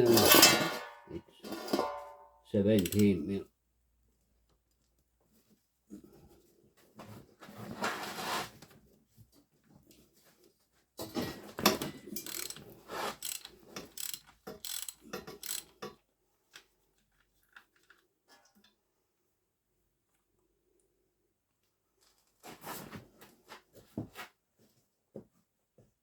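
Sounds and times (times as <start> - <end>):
ratchet wrench clicking: 2.8 - 3.1, 12.2 - 12.6, 13.2 - 15.9.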